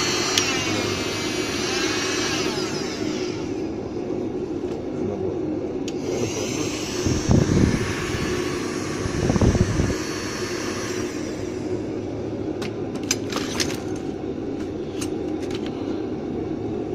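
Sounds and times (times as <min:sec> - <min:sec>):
heat gun whooshing hum: 0:00.0 - 0:16.9
high hiss: 0:05.9 - 0:12.1.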